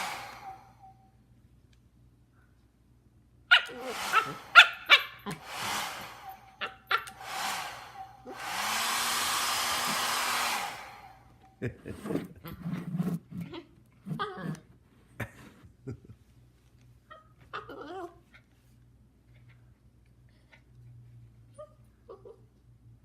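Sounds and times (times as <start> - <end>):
hair dryer blowing: 0.0 - 1.0, 3.6 - 11.6
dog making sharp vocal sounds: 3.5 - 5.5.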